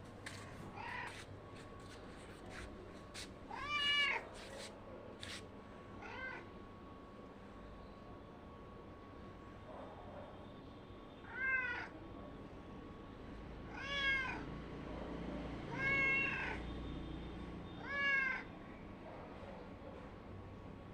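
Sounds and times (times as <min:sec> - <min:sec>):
cat meowing: 0:00.7 - 0:01.3, 0:03.5 - 0:04.4, 0:06.0 - 0:06.5, 0:11.2 - 0:11.9, 0:13.7 - 0:14.4, 0:15.7 - 0:16.6, 0:17.8 - 0:18.5.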